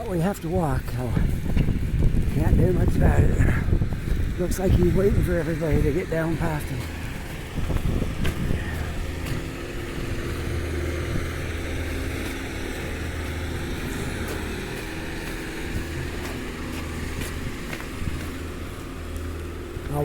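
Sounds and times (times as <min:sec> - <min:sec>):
snow plow engine idling: 0:00.0 - 0:20.0.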